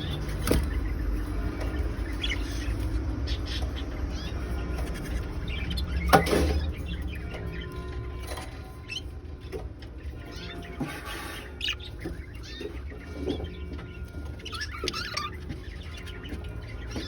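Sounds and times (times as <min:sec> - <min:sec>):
budgerigars chattering: 0:00.0 - 0:09.1, 0:10.0 - 0:17.0.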